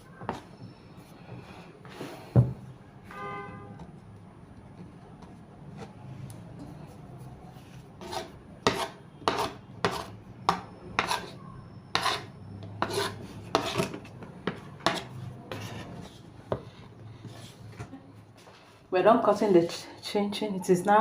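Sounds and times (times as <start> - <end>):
knife chopping dough on board: 8.0 - 11.3, 12.0 - 15.8.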